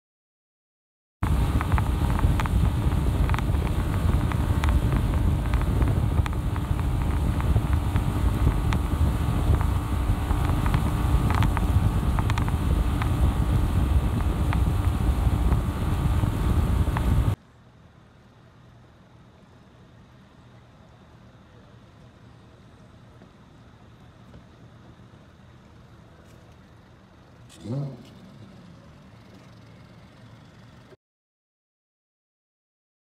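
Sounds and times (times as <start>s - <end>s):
boat engine: 1.2s - 17.4s, 23.0s - 31.0s
wind buffeting microphone: 1.2s - 17.4s.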